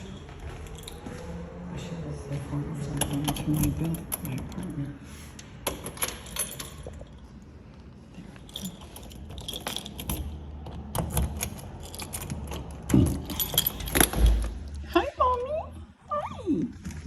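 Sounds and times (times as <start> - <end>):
keys jangling: 0.0 - 1.4, 5.6 - 7.4, 8.3 - 14.8.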